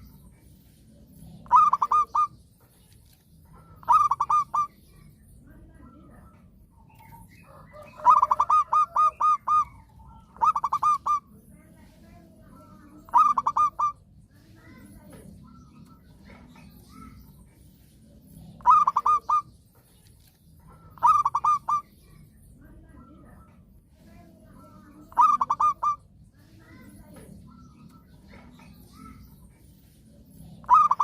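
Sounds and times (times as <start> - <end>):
dove cooing: 1.4 - 2.4, 3.6 - 4.7, 7.4 - 11.3, 12.5 - 14.0, 18.6 - 19.5, 20.8 - 21.8, 24.5 - 26.0, 30.6 - 31.0.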